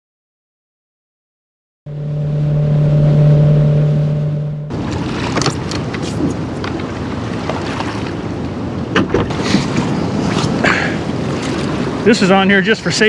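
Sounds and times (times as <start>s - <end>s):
river water rushing and splashing: 4.7s - 13.0s
knocks on boat: 8.9s - 9.6s.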